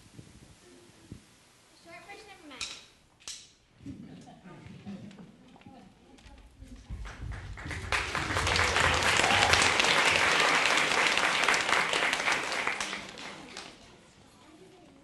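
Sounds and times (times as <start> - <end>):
audience applauding: 7.0 - 13.9.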